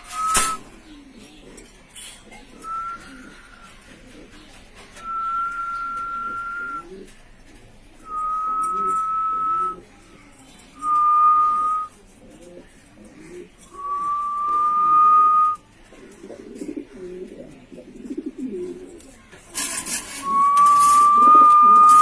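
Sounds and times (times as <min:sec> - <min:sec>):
high whistle notes: 0:00.0 - 0:00.6, 0:10.8 - 0:11.9, 0:13.8 - 0:15.6, 0:20.2 - 0:22.0
pigeons cooing: 0:00.0 - 0:10.3, 0:10.9 - 0:15.1, 0:15.7 - 0:22.0.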